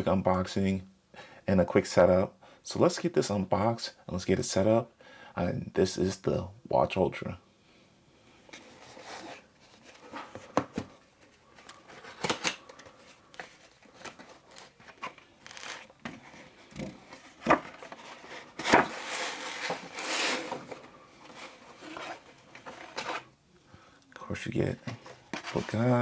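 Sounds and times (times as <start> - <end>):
box parts and paper scraping: 8.5 - 23.3, 24.8 - 26.0.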